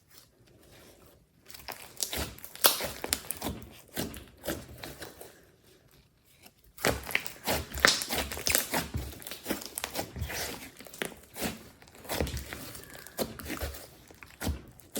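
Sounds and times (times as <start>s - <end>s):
slime crackling and popping: 1.5s - 4.3s, 6.8s - 14.9s.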